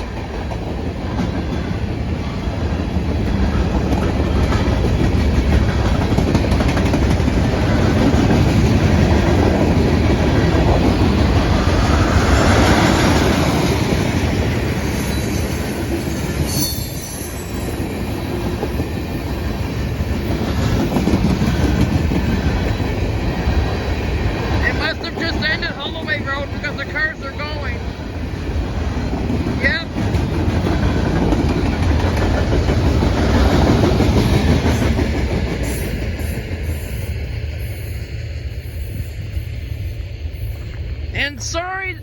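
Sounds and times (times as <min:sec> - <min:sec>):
freight train cars clattering: 0:00.0 - 0:36.6
high squeal: 0:15.0 - 0:17.8.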